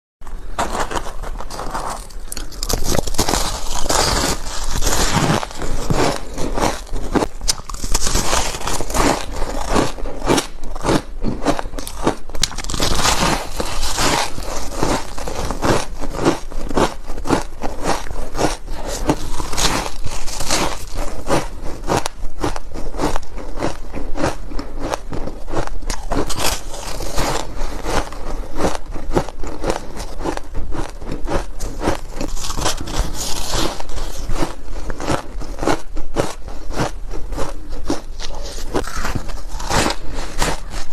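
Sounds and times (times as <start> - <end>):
ice crunching: 0.6 - 10.9, 11.6 - 16.8, 17.4 - 21.2, 25.9 - 27.6, 31.6 - 35.4, 37.8 - 40.9.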